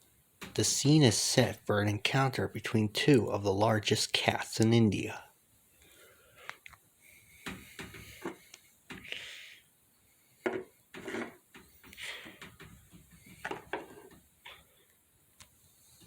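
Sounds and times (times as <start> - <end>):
knocks and taps on hard surface: 7.5 - 9.1, 10.4 - 11.7.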